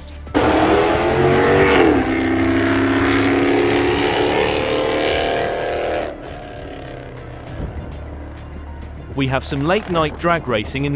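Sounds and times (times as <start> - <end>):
car engine accelerating hard: 0.3 - 8.1.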